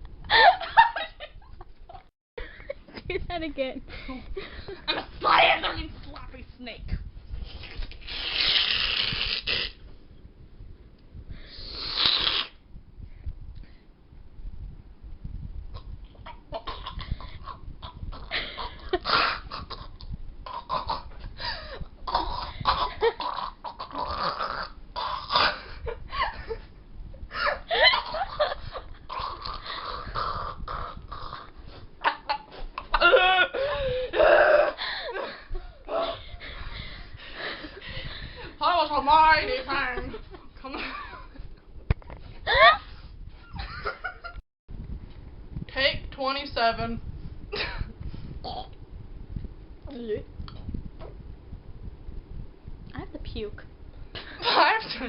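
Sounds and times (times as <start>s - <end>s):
girls laughing hard: 0.3s - 2.0s, 27.4s - 29.0s, 42.5s - 42.8s, 43.6s - 44.4s
person hissing like a snake: 8.0s - 9.8s, 11.5s - 12.6s.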